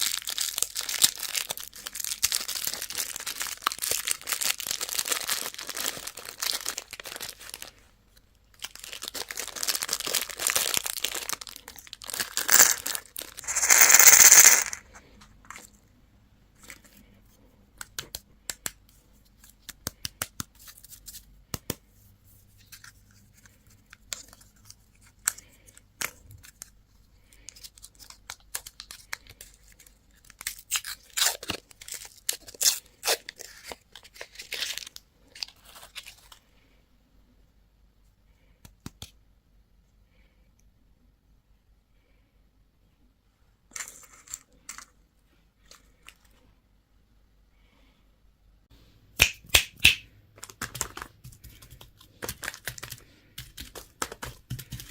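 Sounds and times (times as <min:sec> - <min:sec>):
wrapper tearing and crinkling: 0:00.0 - 0:07.8, 0:08.5 - 0:14.8, 0:27.5 - 0:36.4.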